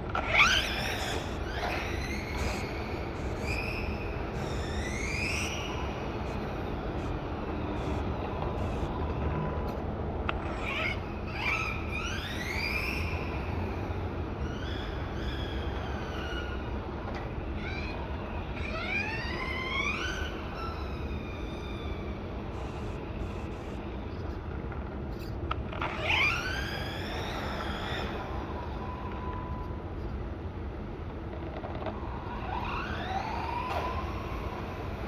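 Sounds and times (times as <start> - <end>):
electric motor whining: 0.1 - 9.6.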